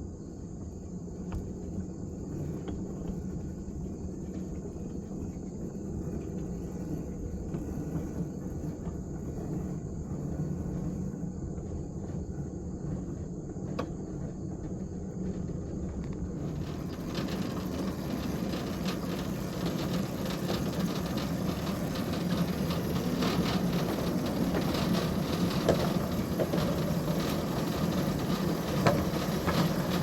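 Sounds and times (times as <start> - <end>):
train rumbling along track: 0.0 - 30.0.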